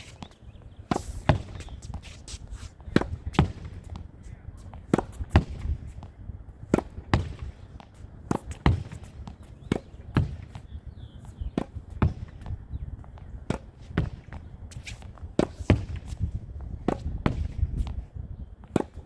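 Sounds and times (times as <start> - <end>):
racket hitting ball: 0.9 - 18.0, 18.6 - 19.0
ball smacking wall and court: 2.8 - 4.1, 4.8 - 10.8, 11.4 - 18.0, 18.7 - 19.0.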